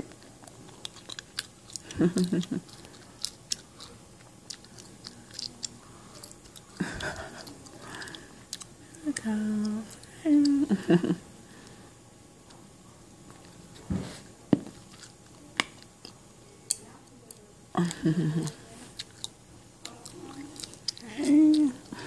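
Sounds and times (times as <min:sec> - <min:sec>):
soft voice sounds: 0:05.0 - 0:10.8, 0:16.8 - 0:19.1, 0:19.8 - 0:22.0.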